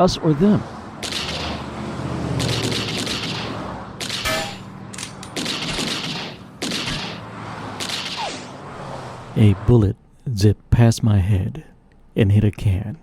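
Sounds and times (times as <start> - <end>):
rapid gunshots: 1.0 - 1.6, 2.4 - 4.3, 5.3 - 7.2, 7.8 - 8.5.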